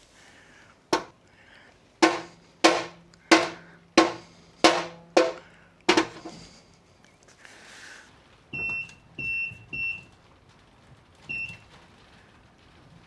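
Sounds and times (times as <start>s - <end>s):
dull knock: 2.0s - 6.3s.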